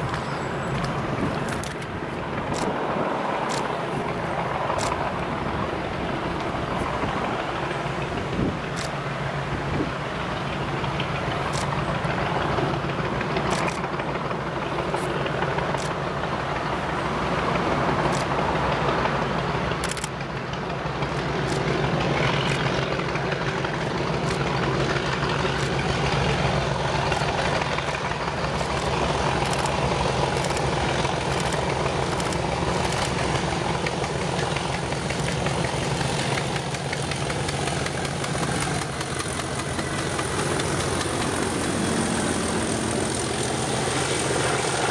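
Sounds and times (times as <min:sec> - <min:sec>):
sharp clicks: 0:00.0 - 0:02.8, 0:03.4 - 0:05.3, 0:08.7 - 0:09.0, 0:11.4 - 0:11.8, 0:13.4 - 0:13.9, 0:15.0 - 0:16.0, 0:18.1 - 0:18.4, 0:19.8 - 0:20.2, 0:21.1 - 0:21.8, 0:22.4 - 0:22.7, 0:23.8 - 0:24.6, 0:25.5 - 0:26.4, 0:27.1 - 0:41.8
diesel locomotives under full power: 0:00.0 - 0:44.9.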